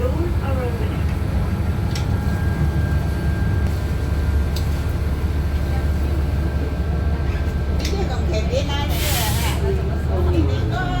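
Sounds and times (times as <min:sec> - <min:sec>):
bus drivetrain rumble: 0:00.0 - 0:11.0.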